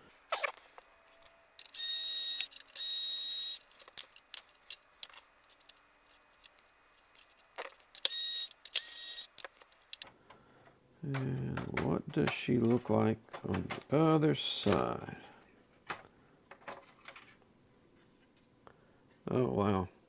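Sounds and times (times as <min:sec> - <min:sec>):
electric screwdriver whirring: 0:00.4 - 0:04.1, 0:07.9 - 0:09.6
small clicks of screws and tools: 0:03.6 - 0:10.1.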